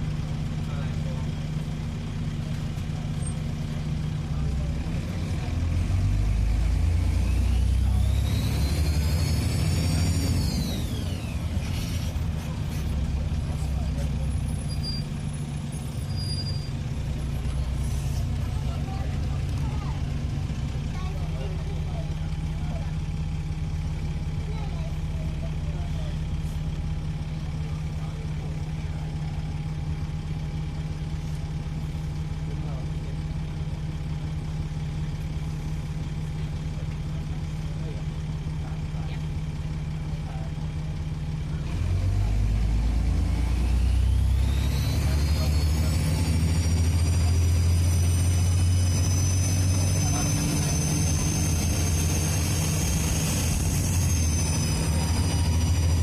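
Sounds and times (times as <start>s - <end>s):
diesel bus engine idling: 0.0s - 56.0s
turbocharger whine: 42.0s - 56.0s.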